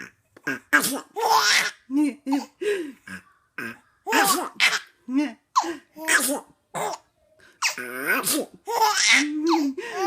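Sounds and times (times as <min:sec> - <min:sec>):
baby laughing: 0:00.0 - 0:05.0, 0:06.0 - 0:10.0.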